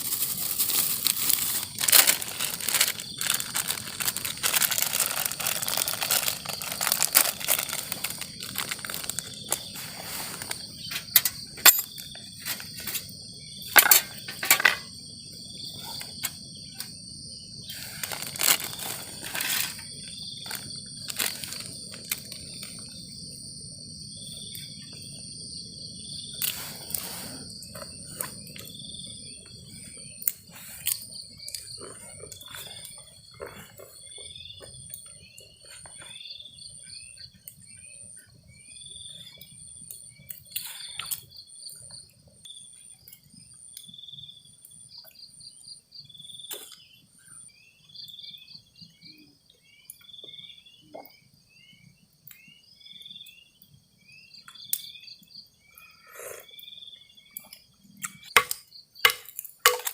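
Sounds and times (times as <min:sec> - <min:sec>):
rustling and crinkling handling noises: 0:00.0 - 0:13.1, 0:17.7 - 0:22.8
crickets chirping: 0:00.0 - 0:59.9.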